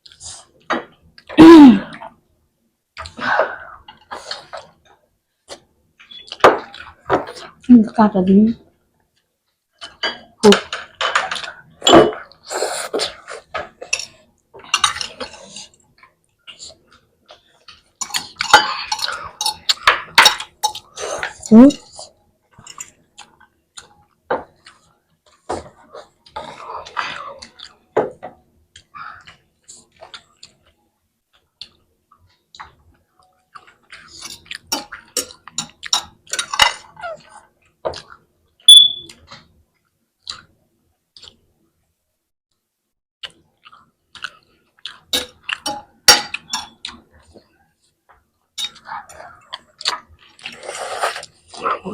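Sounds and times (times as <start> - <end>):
close-up eating noises: 0.0 - 2.2, 3.0 - 8.0, 8.6 - 41.5, 43.2 - 51.9
forks and plates clinking: 9.8 - 12.3, 13.2 - 15.8, 17.7 - 21.9, 33.6 - 37.0, 45.1 - 46.9
chewing with wet mouth clicks: 40.2 - 40.5, 41.2 - 41.4, 43.2 - 47.3.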